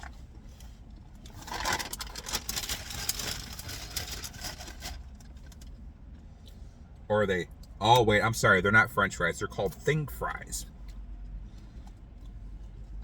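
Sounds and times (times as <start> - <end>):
paper packaging rustling: 1.3 - 5.7.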